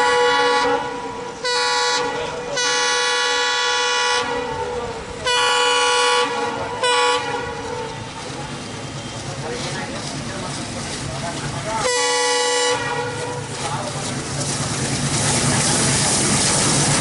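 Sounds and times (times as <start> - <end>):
diesel locomotive horn blasts: 0.0 - 8.3, 11.8 - 13.6
low diesel engine rumble: 0.0 - 17.0.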